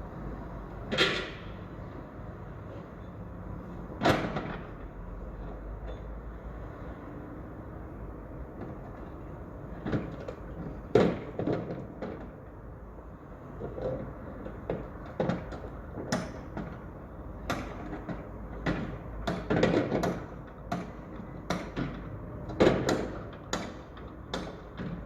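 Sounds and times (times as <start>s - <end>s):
construction site din: 0.0s - 25.0s.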